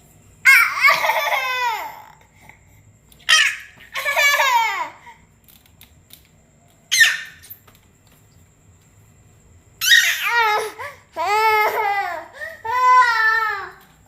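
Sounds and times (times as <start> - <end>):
baby squealing and babbling: 3.3 - 4.8, 6.9 - 7.6, 9.8 - 12.1.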